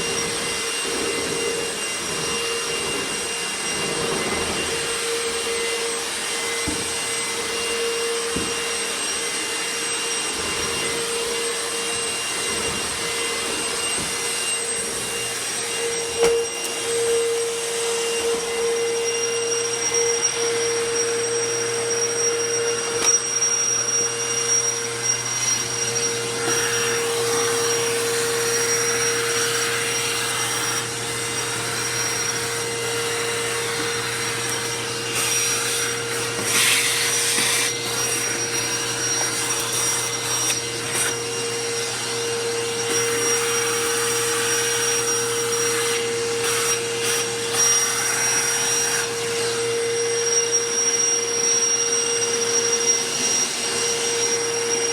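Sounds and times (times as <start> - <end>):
vacuum cleaner running: 0.0 - 54.9.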